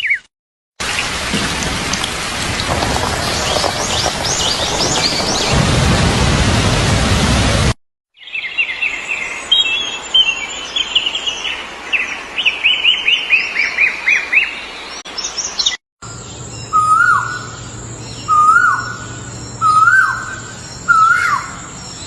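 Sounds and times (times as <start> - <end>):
heavy rain falling: 0.8 - 7.8
birds chirping: 2.6 - 5.6, 8.2 - 22.0
songbird singing falling chirps: 8.2 - 22.0.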